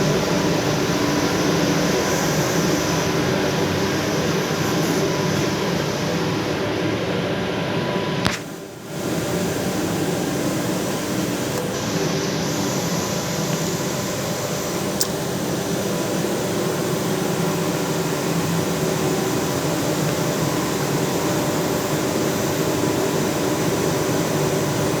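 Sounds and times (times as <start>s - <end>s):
machine mechanical hum: 0.0s - 25.0s
sharp click: 8.2s - 8.5s.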